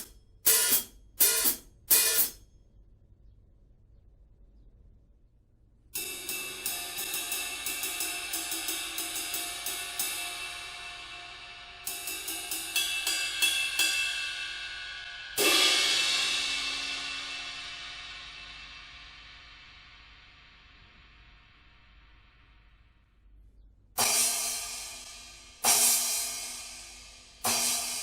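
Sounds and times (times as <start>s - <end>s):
cymbal struck with stick: 0.0s - 2.4s, 6.0s - 22.2s, 24.0s - 28.0s
cymbal crash ringing: 6.0s - 22.4s.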